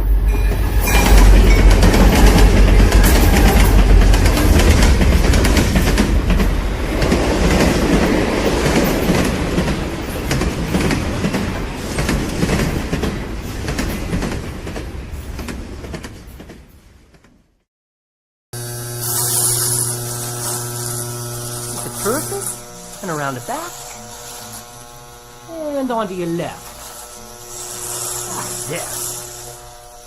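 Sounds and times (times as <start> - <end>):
train wheels clattering on rails: 0.3 - 17.4.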